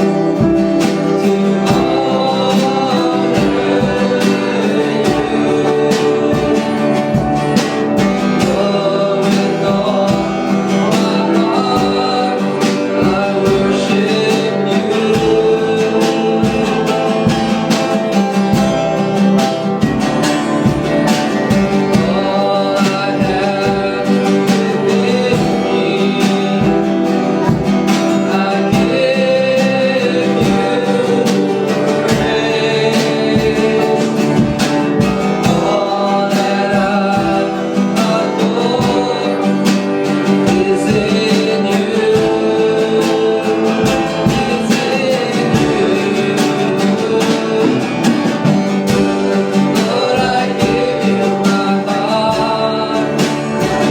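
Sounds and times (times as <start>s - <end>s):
people singing worship song: 0.0s - 53.9s
strummed acoustic guitar: 0.0s - 53.9s.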